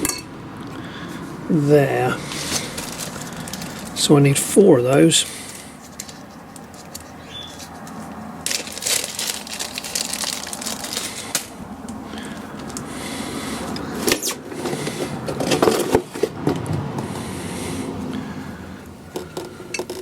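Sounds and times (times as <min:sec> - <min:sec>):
metal fasteners clicking and clattering: 0:05.9 - 0:11.5, 0:19.2 - 0:20.0.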